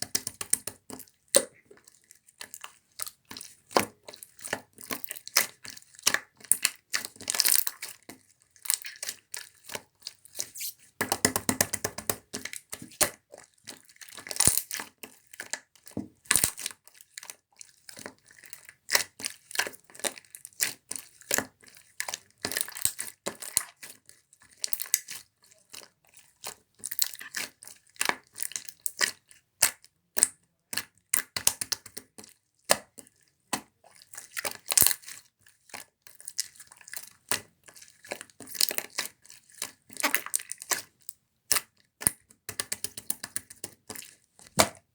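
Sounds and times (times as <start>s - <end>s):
slime squished by hand: 44.5s - 44.8s.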